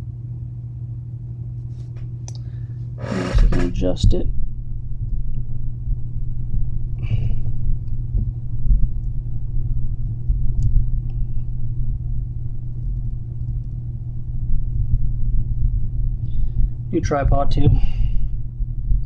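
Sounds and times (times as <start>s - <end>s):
low rumble: 2.4s - 19.0s
scrape or clatter: 3.0s - 3.7s
faint clicks: 12.8s - 13.8s.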